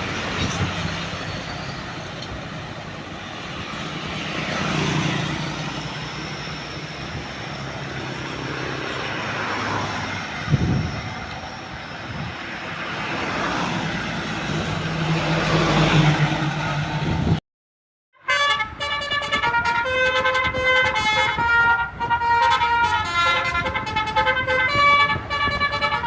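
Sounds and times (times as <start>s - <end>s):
vehicle rushing past: 3.0s - 17.4s
multi-tone bus horn melody: 18.2s - 26.0s.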